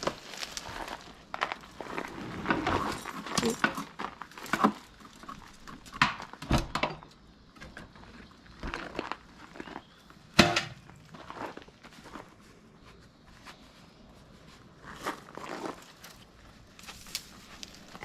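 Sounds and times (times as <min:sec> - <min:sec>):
shuffling footsteps: 0:10.8 - 0:18.0.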